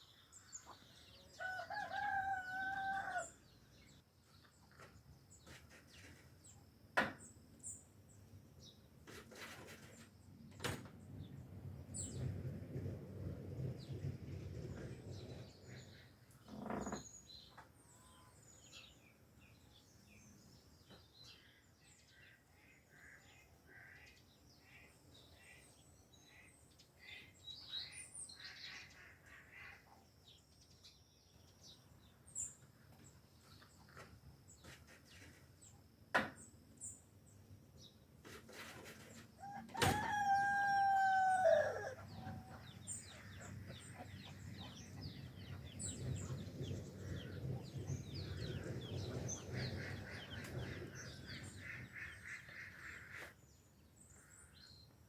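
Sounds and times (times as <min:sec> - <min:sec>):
rooster crowing: 0:01.4 - 0:03.4, 0:39.4 - 0:42.7
small birds chirping: 0:41.4 - 0:55.0.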